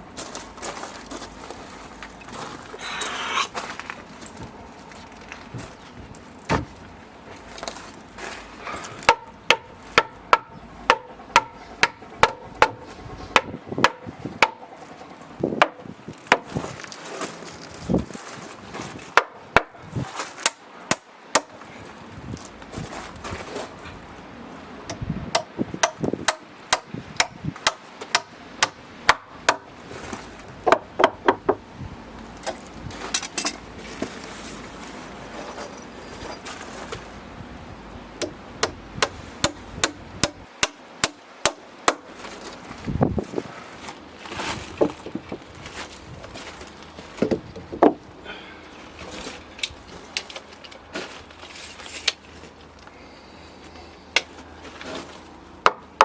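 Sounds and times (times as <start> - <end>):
hammer driving nails into timber: 9.1 - 12.8, 38.2 - 42.1.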